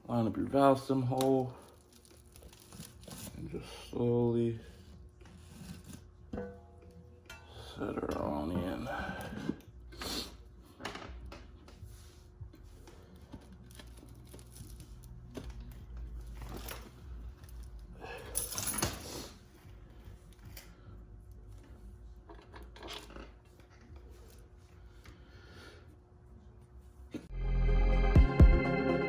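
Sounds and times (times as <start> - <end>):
metal clinks and scrapes: 16.1 - 19.4.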